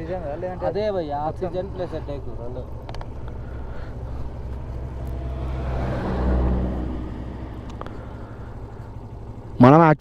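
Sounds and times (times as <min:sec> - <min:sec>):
vehicle passing by: 0:03.2 - 0:09.3.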